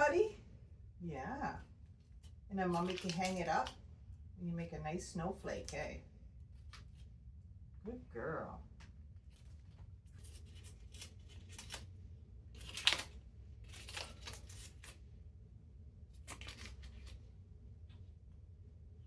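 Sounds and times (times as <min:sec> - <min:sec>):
parrot tearing paper: 0:01.8 - 0:03.8, 0:06.4 - 0:07.2, 0:09.2 - 0:15.1, 0:16.0 - 0:17.4.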